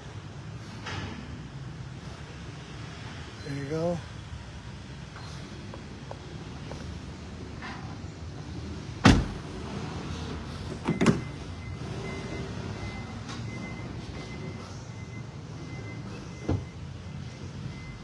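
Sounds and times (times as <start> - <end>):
car door shutting thud: 9.0 - 9.6, 10.6 - 11.4.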